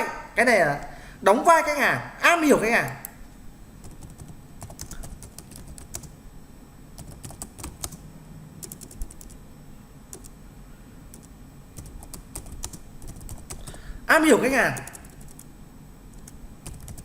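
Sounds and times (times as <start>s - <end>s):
low room hum: 0.0s - 17.0s
typing on computer keyboard: 3.8s - 6.1s, 7.0s - 8.0s, 8.6s - 9.4s, 10.1s - 10.3s, 11.1s - 13.8s, 14.8s - 15.5s, 16.1s - 17.0s.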